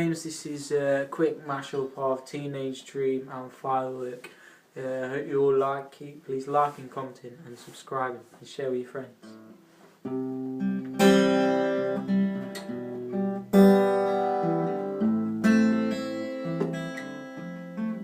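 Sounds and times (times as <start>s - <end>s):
acoustic guitar chords ringing: 10.1s - 18.0s.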